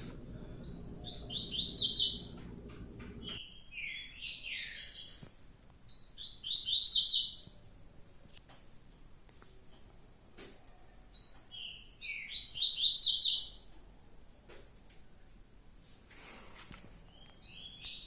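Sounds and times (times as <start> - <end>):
bird sweeping calls: 0.0 - 2.4
birds chirping falling notes: 0.0 - 5.0.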